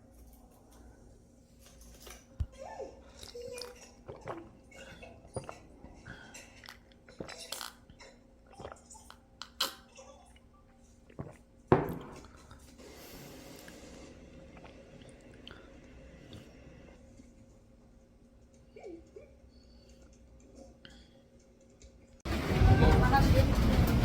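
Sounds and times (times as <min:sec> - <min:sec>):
person chewing: 0:03.1 - 0:12.8.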